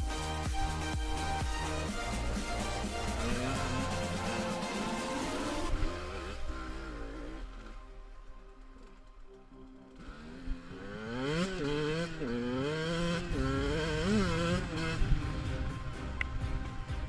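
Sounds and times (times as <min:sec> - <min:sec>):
atv engine revving: 0:00.2 - 0:08.2, 0:09.9 - 0:17.0.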